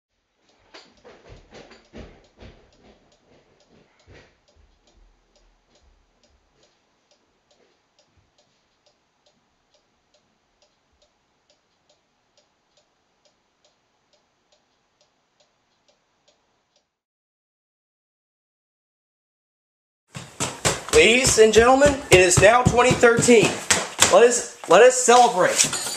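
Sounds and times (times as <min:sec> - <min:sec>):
faint clock ticking: 0:00.2 - 0:17.0, 0:20.1 - 0:25.2
louder knocks: 0:20.2 - 0:24.2.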